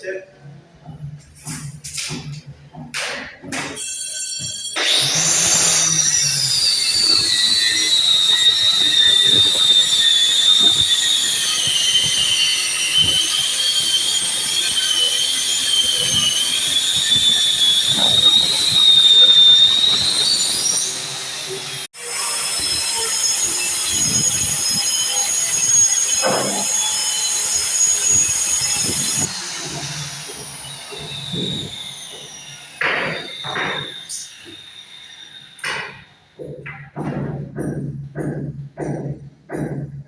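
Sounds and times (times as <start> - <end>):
electric power tool whining: 4.4 - 36.0.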